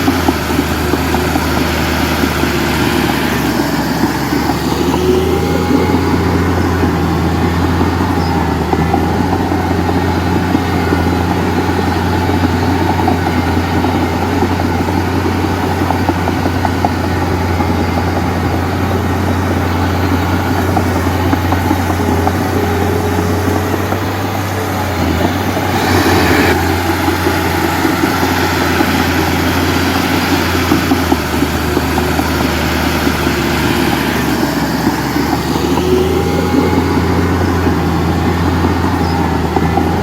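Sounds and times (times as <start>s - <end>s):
diesel machinery engine running: 0.0s - 40.0s.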